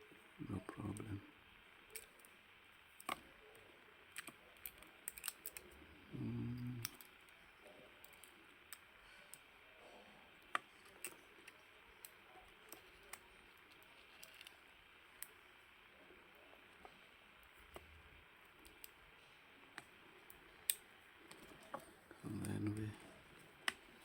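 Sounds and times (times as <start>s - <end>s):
small tools clicking and tapping: 4.1s - 5.6s.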